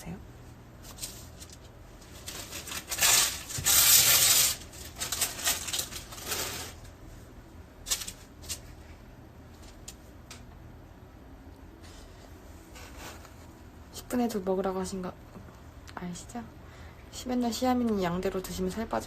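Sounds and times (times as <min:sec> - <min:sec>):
rustling: 0:00.8 - 0:06.8.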